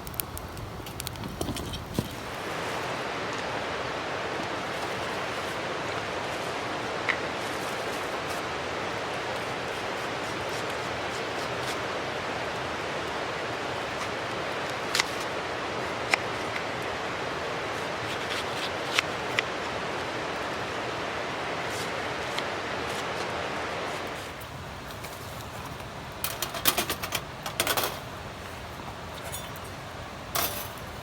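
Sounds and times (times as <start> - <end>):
fire crackling pops: 0.0 - 5.6, 24.0 - 31.0
campfire hissing: 0.0 - 31.0.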